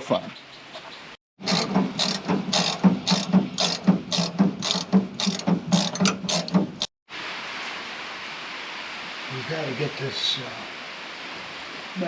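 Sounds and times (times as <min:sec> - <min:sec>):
socket ratchet clicking: 0:01.5 - 0:06.9
steady hiss: 0:07.1 - 0:12.0.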